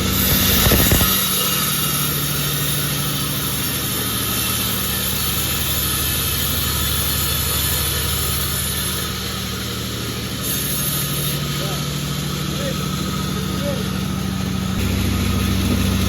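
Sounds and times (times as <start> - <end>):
sawmill machine humming: 0.0 - 16.0.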